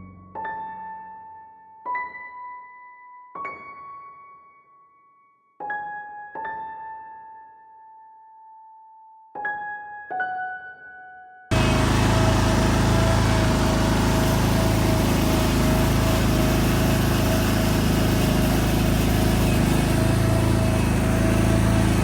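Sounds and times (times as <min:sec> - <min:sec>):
leaf blower running: 0:11.5 - 0:22.0.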